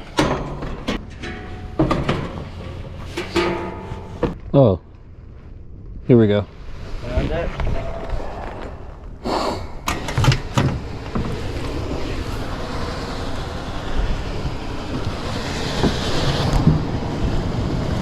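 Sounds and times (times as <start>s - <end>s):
wind rushing on microphone: 6.6s - 18.0s.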